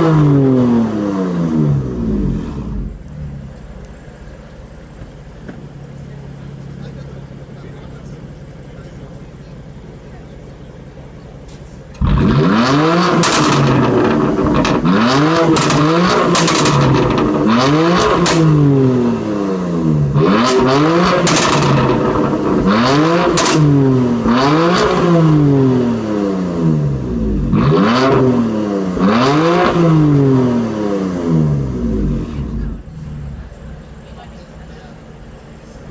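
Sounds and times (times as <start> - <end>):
car engine revving: 0.0 - 8.6, 11.9 - 35.8
exhaust crackles and pops: 11.4 - 18.8, 20.1 - 25.0.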